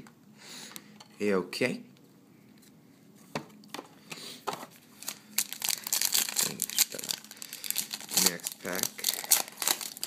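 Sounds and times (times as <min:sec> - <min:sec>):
plastic wrapper crinkling and tearing: 0:04.9 - 0:10.0.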